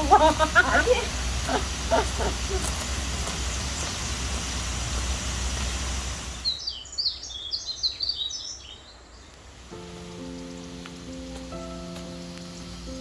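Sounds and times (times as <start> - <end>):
low outdoor rumble: 0.0 - 6.6
small bird chirping: 5.6 - 13.0.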